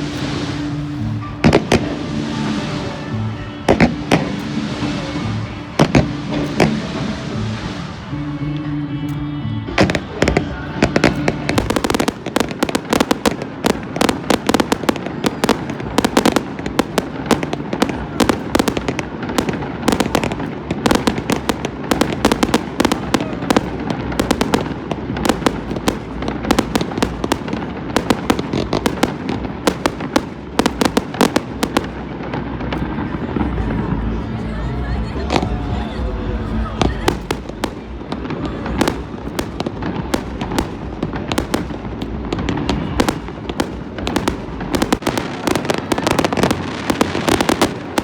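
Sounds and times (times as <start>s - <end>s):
fireworks bangs and cracks: 0.0s - 48.0s.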